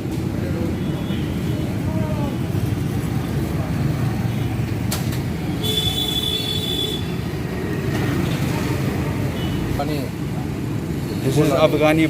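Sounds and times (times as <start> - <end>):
road traffic rumble: 0.0 - 12.0.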